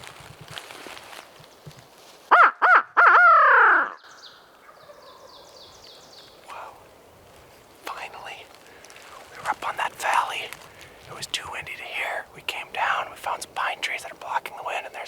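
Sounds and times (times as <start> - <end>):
turkey gobbling: 2.3 - 4.0, 4.6 - 5.5.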